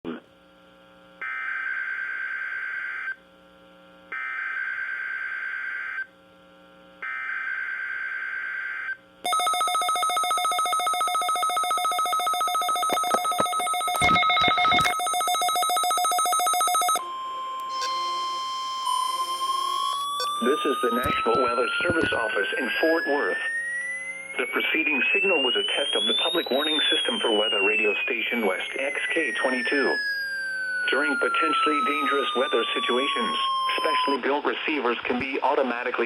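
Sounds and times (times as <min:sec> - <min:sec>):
buzzing digital tones: 0:11.9 - 0:34.4
steady alert tone: 0:17.0 - 0:34.2
fast-pulsing alert tone: 0:18.9 - 0:34.2.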